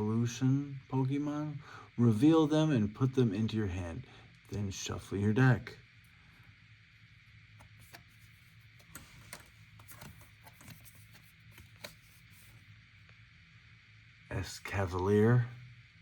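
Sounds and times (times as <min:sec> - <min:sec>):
trading cards rubbing and clicking: 0:07.6 - 0:12.7.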